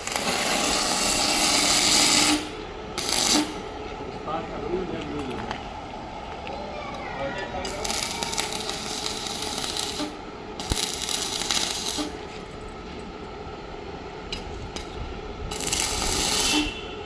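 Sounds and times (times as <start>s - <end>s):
welding arc crackling: 0.0s - 3.8s, 7.6s - 12.7s, 14.3s - 16.8s.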